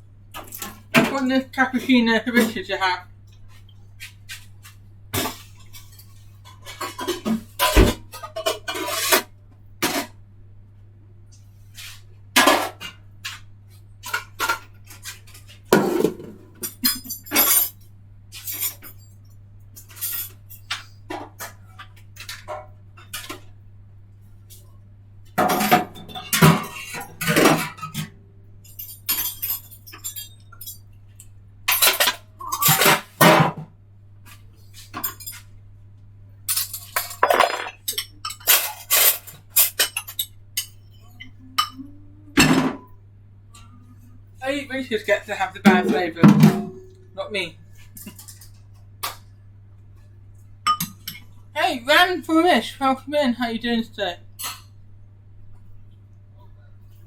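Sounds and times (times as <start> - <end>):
steady low hum: 32.4 - 51.6.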